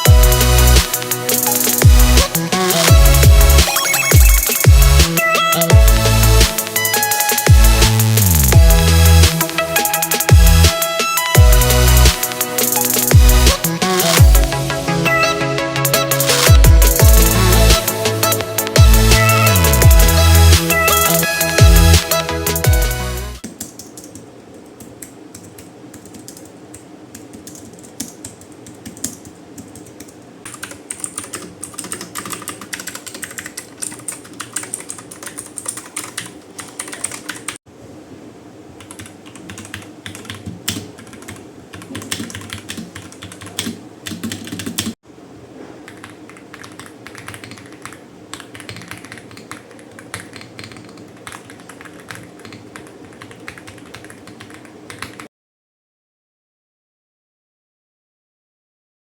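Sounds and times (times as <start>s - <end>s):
mechanical keyboard typing: 0.0s - 2.1s, 23.4s - 37.6s, 38.8s - 45.0s, 45.9s - 55.3s.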